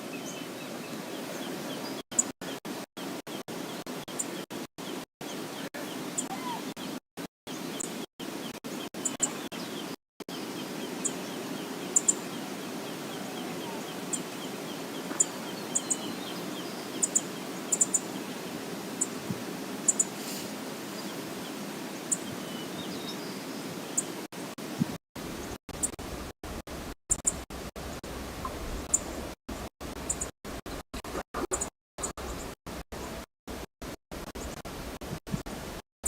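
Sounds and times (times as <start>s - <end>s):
faint bird chirps: 10.3s - 18.2s.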